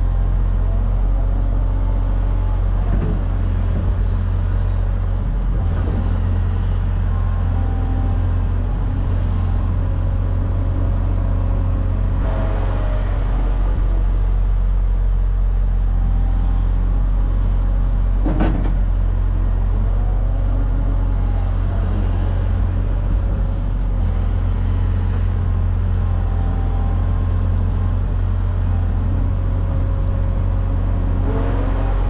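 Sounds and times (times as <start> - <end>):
diesel engine humming: 0.0 - 32.0.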